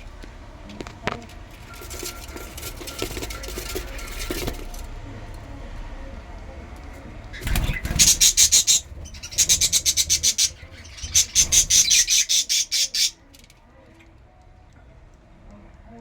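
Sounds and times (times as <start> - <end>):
bird chicks begging calls: 6.0 - 13.2.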